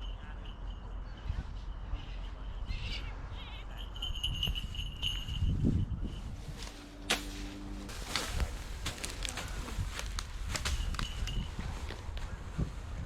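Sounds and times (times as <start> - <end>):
small bell jingling: 0.0 - 6.3, 10.6 - 11.8.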